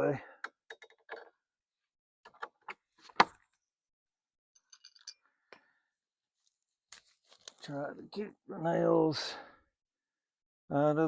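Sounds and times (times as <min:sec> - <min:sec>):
small metallic clinks: 0:04.6 - 0:05.4.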